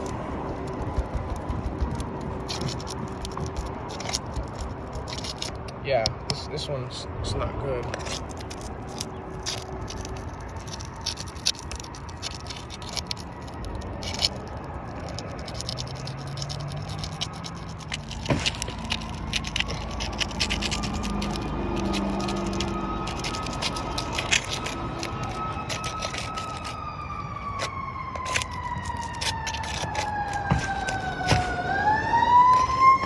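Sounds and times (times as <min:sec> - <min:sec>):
scraping on roof shingles: 0:08.0 - 0:26.9, 0:27.5 - 0:33.0.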